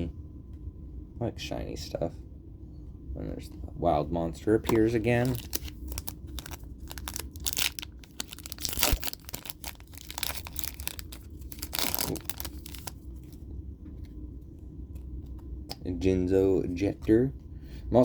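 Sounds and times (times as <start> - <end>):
foil wrapper crinkling and tearing: 4.7 - 13.4.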